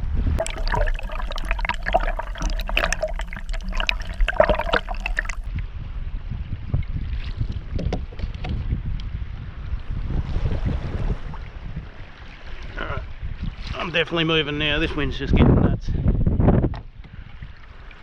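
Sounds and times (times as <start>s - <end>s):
water gurgling and splashing: 0.4s - 5.5s
wind rumble on microphone: 5.4s - 18.0s.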